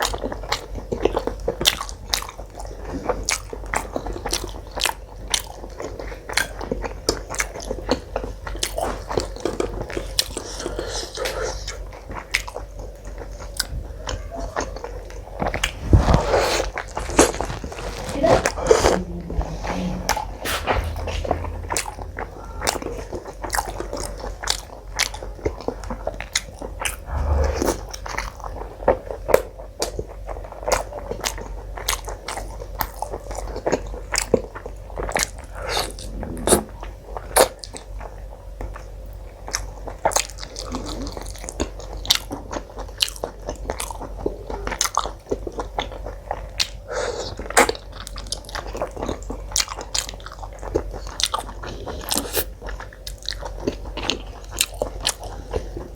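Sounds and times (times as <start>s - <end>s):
steady low hum: 15.0s - 39.4s.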